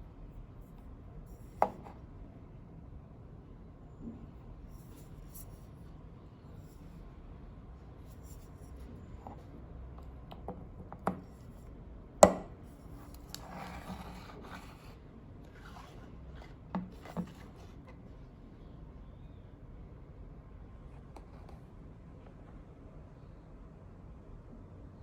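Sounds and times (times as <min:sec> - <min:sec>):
short rustle or scrape: 0:13.0 - 0:18.0.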